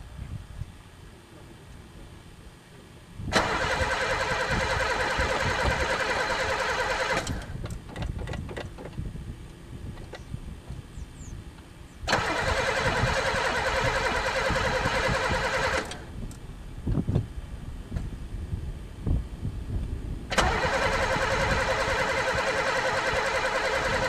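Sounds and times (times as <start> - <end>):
starter cranking engine: 3.3 - 8.9, 12.1 - 16.1, 20.3 - 24.0.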